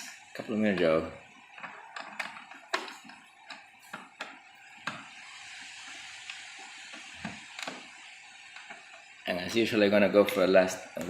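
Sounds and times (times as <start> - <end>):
faint steady hiss: 0.0 - 11.0.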